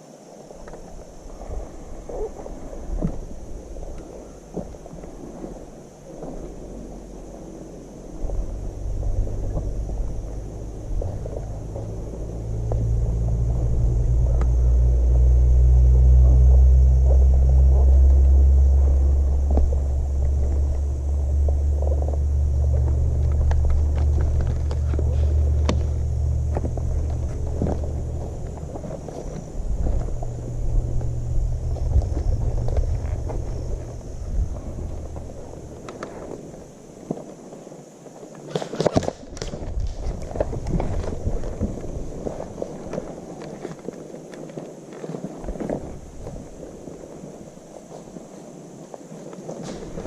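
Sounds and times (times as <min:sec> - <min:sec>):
steady low rumble: 0:00.5 - 0:37.2, 0:39.3 - 0:43.4
wind buffeting microphone: 0:00.6 - 0:37.1, 0:39.2 - 0:43.7, 0:44.7 - 0:48.8
running footsteps: 0:08.1 - 0:36.5.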